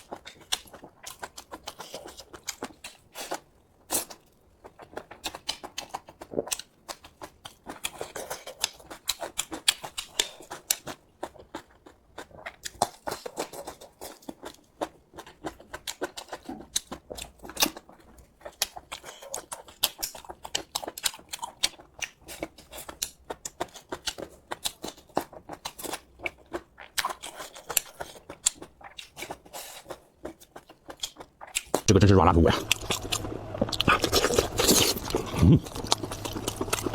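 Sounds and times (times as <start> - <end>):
person chewing and smacking: 0.0 - 36.9.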